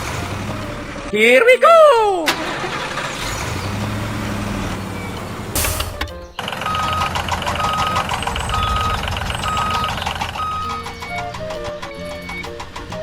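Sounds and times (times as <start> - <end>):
vehicle engine running: 0.0 - 1.1, 2.2 - 13.0
reversing alarm beeping: 6.4 - 12.5.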